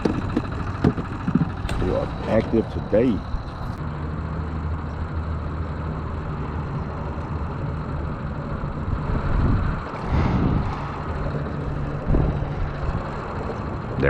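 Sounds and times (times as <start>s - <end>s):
small boat motor humming: 0.0s - 14.0s
wind buffeting microphone: 8.1s - 14.0s.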